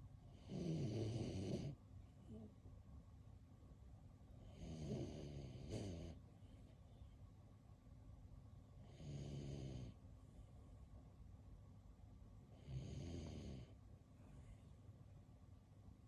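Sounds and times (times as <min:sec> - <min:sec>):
dog snoring: 0:00.3 - 0:01.8, 0:04.4 - 0:06.2, 0:08.8 - 0:10.0, 0:12.5 - 0:13.8.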